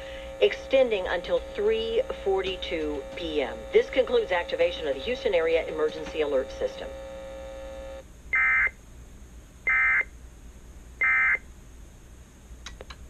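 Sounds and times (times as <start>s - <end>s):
steady buzzing tone: 0.0s - 8.8s.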